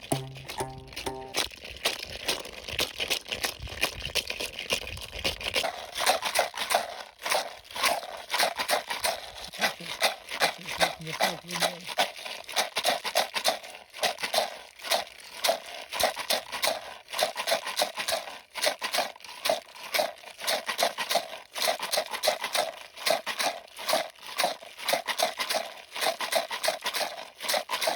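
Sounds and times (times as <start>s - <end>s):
homemade instrument rattling: 0.0s - 1.8s.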